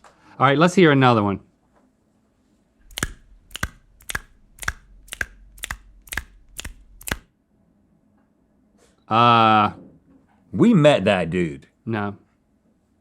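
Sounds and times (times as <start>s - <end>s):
person making sharp pops: 2.8s - 7.3s.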